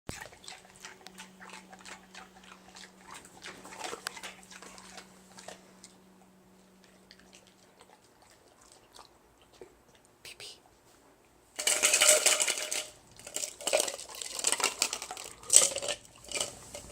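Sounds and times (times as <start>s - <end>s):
dog crunching ice cubes: 0.1s - 6.0s, 11.6s - 16.9s.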